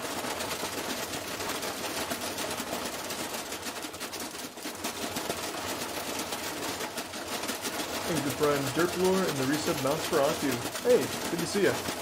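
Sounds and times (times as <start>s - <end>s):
washing machine banging and rattling: 4.6s - 12.0s.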